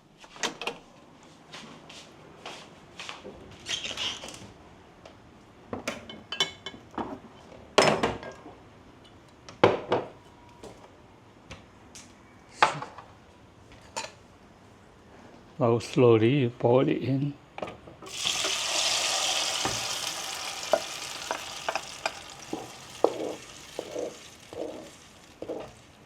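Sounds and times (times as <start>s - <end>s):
pots and metal utensils clanking: 18.1s - 26.0s.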